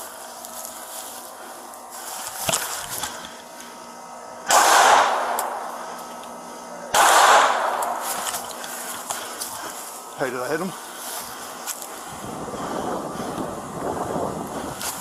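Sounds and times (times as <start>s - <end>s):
gunshots: 4.5s - 5.7s, 6.9s - 8.4s.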